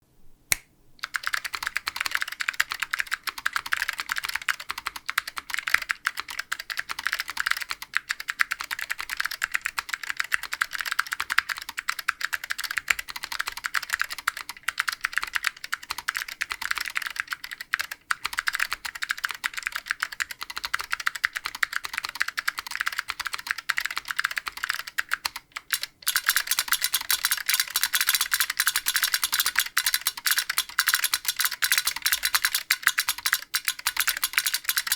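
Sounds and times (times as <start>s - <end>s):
fast typing on mechanical keyboard: 1.0s - 34.9s.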